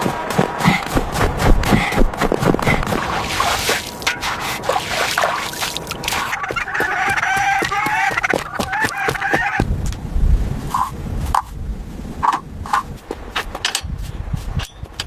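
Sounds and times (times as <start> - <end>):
rooster crowing: 6.3 - 9.6
low rumble: 9.6 - 13.0.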